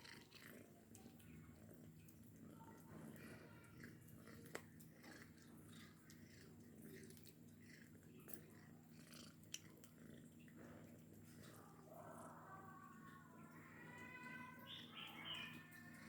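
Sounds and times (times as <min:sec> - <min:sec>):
cat chewing: 0:00.0 - 0:12.3.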